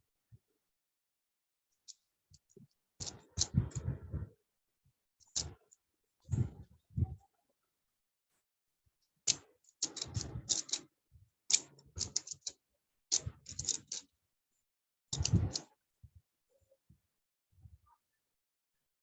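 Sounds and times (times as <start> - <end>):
puzzle cube plastic layers clicking: 3.0 - 3.7, 9.3 - 10.8, 11.5 - 14.1, 15.2 - 15.6.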